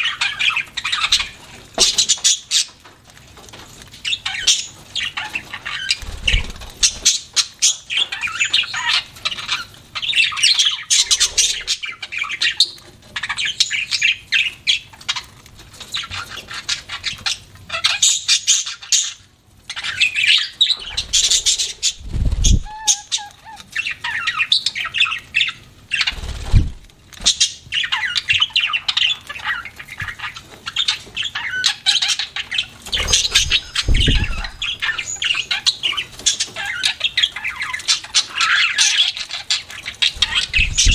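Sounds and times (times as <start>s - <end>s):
budgerigars chattering and squawking: 0.0s - 2.9s, 4.0s - 40.9s
deep thumps: 26.4s - 26.8s, 33.3s - 34.6s.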